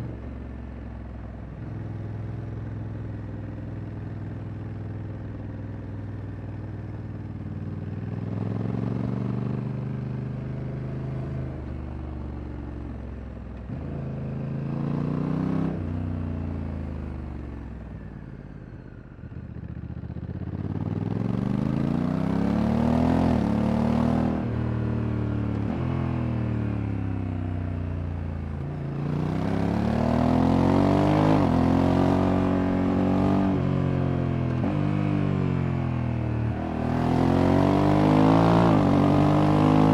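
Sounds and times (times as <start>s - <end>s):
motorcycle engine accelerating: 28.4s - 39.9s.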